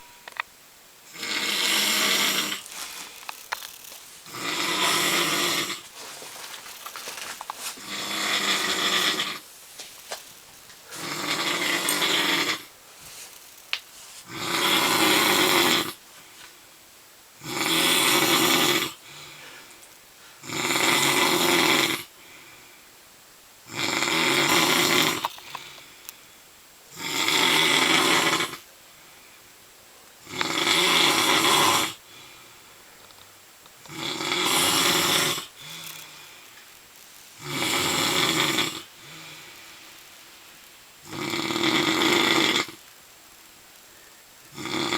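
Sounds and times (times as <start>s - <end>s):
man snoring loudly: 1.1s - 2.8s, 4.2s - 5.9s, 7.8s - 9.5s, 10.9s - 12.7s, 14.2s - 16.0s, 17.4s - 19.3s, 20.4s - 22.1s, 23.7s - 25.7s, 26.9s - 28.6s, 30.2s - 32.0s, 33.9s - 36.3s, 37.4s - 39.5s, 41.0s - 42.8s, 44.5s - 44.9s
faint breathing: 19.0s - 20.5s, 22.1s - 23.0s, 25.4s - 26.6s, 32.0s - 33.2s, 35.4s - 36.8s, 38.8s - 40.6s.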